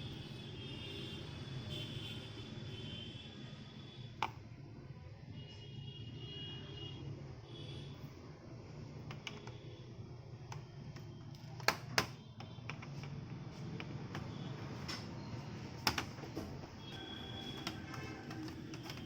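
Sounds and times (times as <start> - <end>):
laptop parts clicking: 4.2 - 4.4, 9.0 - 9.6, 10.4 - 19.0.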